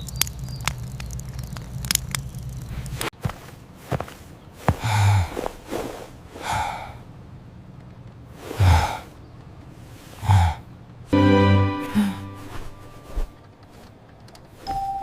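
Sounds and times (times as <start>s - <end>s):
cartoon character huffing: 11.7s - 12.6s.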